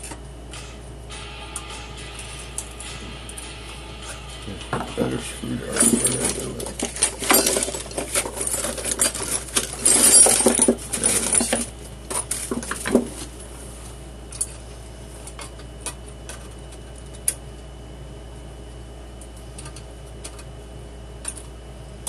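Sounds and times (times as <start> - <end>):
metal hand tools clinking: 5.7 - 12.5.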